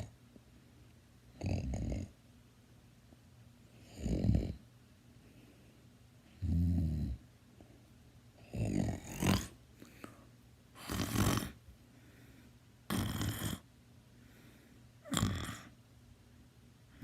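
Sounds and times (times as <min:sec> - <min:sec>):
person snoring: 0:08.5 - 0:09.6, 0:10.8 - 0:11.6, 0:12.9 - 0:13.6, 0:15.0 - 0:15.8.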